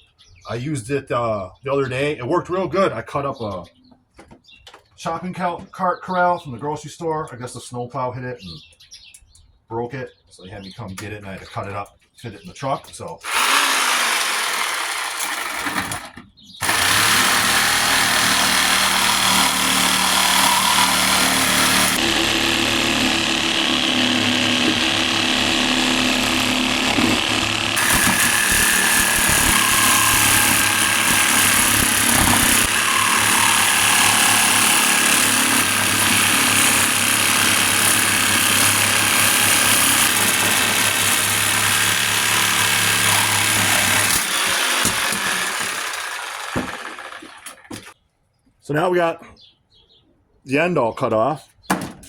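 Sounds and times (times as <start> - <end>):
reciprocating saw cutting steel: 13.2 - 47.5.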